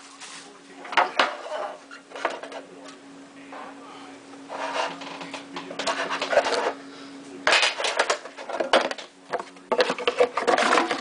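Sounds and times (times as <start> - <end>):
packaging rustling and scraping: 4.5 - 6.8.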